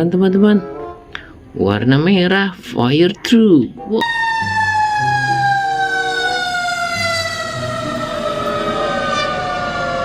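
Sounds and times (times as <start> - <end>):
fire truck siren wailing: 4.0 - 10.0.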